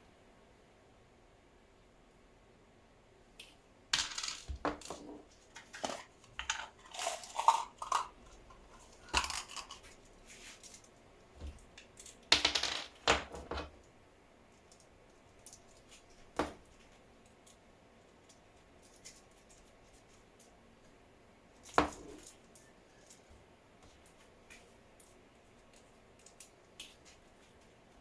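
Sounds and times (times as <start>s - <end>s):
small parts and tools clattering: 4.0s - 13.7s, 21.6s - 23.3s.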